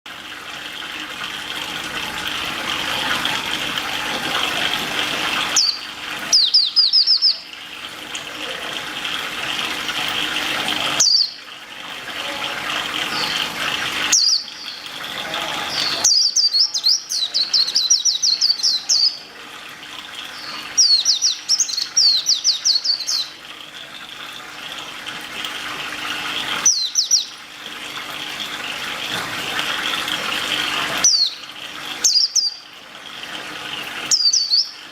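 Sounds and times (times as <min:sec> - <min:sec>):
songbird trilling: 0:05.5 - 0:07.4, 0:26.6 - 0:27.4, 0:34.1 - 0:34.8.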